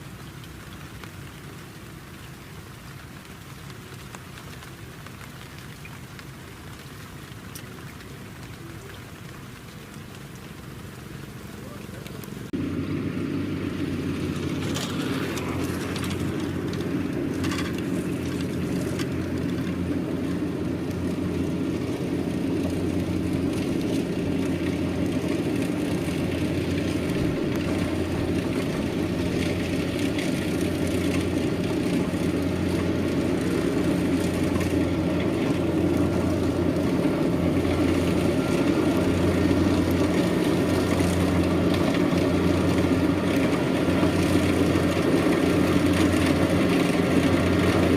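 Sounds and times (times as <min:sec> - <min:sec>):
combine harvester diesel engine: 0:07.6 - 0:47.9
threshing machinery whirring: 0:12.2 - 0:47.9.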